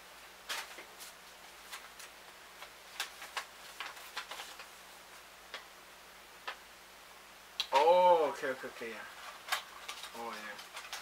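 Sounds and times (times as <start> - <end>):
packaging crinkling and clicking: 1.7 - 4.7, 9.2 - 11.0.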